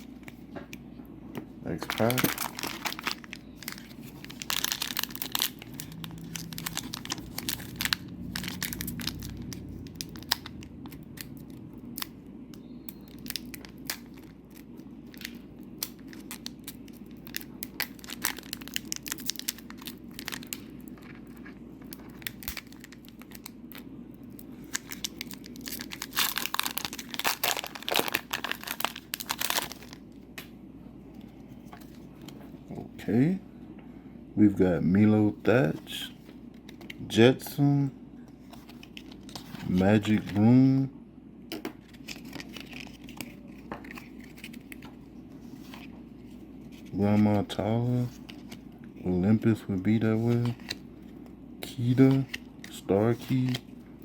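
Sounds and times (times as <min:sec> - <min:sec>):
foil wrapper crinkling and tearing: 0:01.7 - 0:12.2, 0:13.0 - 0:30.0, 0:41.8 - 0:44.9.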